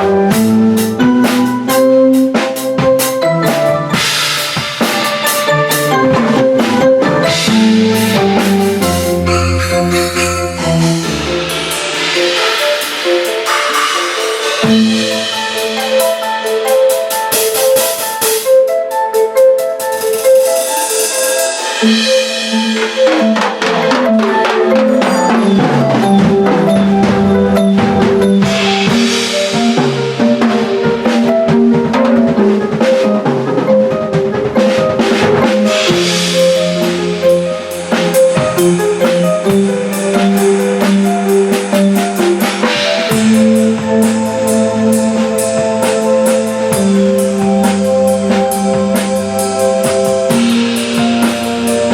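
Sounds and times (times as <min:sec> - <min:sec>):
drum and cymbal strikes: 0:00.0 - 0:51.9
pitched mallet notes: 0:03.2 - 0:18.4, 0:20.1 - 0:32.8
held low note: 0:07.4 - 0:12.5
cymbal wash: 0:07.4 - 0:18.5.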